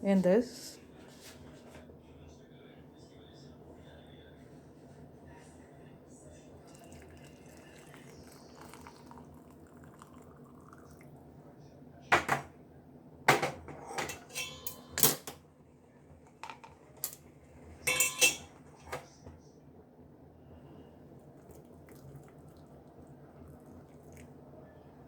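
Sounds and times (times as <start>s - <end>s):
utensils clinking against cup and pan: 13.4s - 15.4s, 16.4s - 17.2s, 17.8s - 19.0s.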